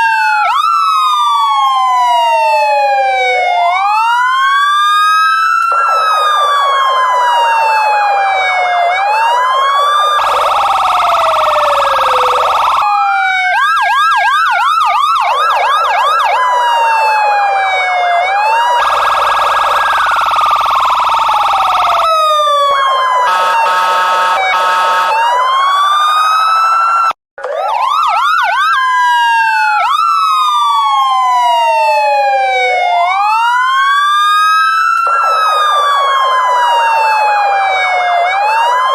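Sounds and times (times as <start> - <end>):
police sirens wailing and yelping: 0.0 - 38.9
steady blaring siren tone: 0.0 - 38.9.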